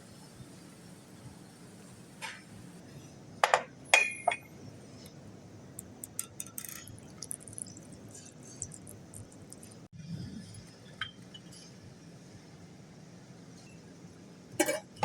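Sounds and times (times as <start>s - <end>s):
tableware clinking: 3.4s - 4.5s, 6.0s - 9.7s, 14.6s - 15.0s.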